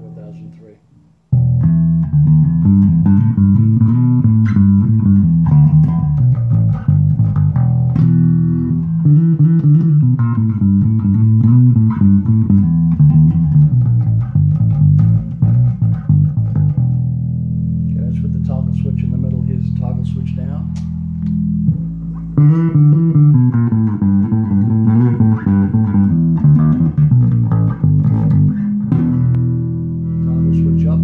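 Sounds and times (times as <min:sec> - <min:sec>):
electric bass plucked notes: 0:00.0 - 0:31.0.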